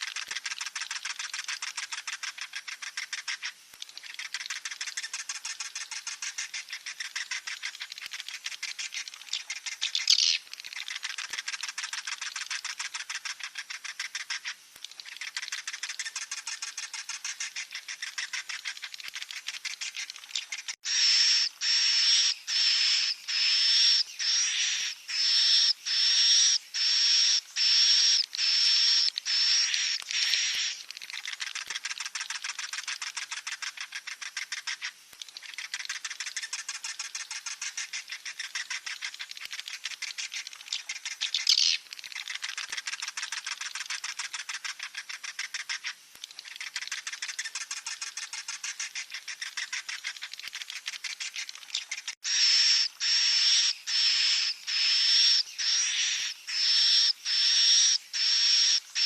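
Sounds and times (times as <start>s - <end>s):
high-pitched chick calls: 20.8s - 30.8s, 52.2s - 59.0s.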